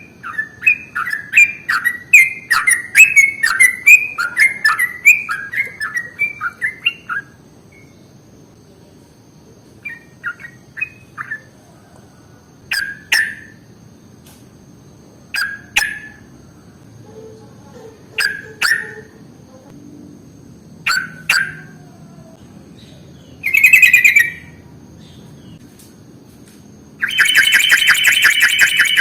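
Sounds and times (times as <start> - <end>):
bird chattering: 18.0 - 19.2, 27.0 - 29.0
bird rattling trill: 27.0 - 29.0.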